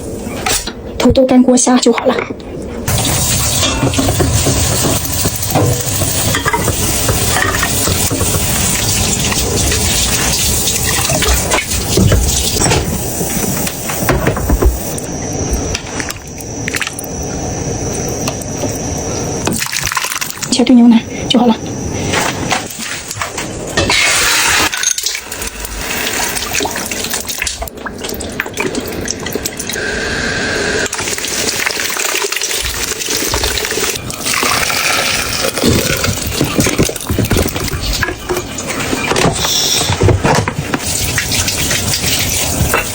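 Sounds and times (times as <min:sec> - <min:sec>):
tap water running into sink: 0:02.9 - 0:15.1, 0:30.9 - 0:42.9.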